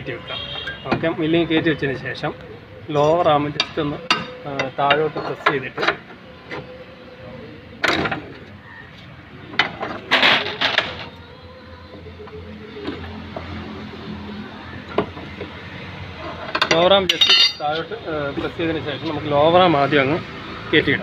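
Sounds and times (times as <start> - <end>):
metal clanks and scraping: 3.5 - 6.8, 7.8 - 8.5, 9.4 - 11.2, 16.2 - 18.0
metal rattle: 16.2 - 17.8.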